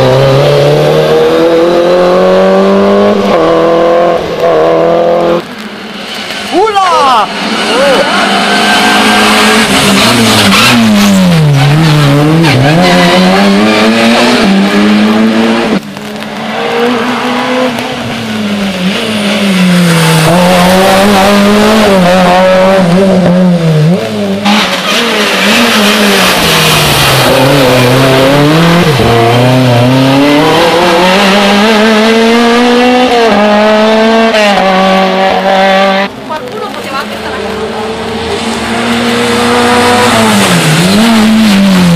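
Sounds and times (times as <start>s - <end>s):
rally car engines revving: 0.0s - 41.9s
tyre squeal: 7.6s - 14.1s.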